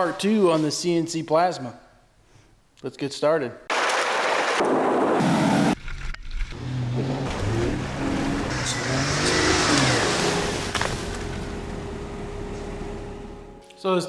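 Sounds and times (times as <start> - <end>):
engine revving: 6.5 - 13.6.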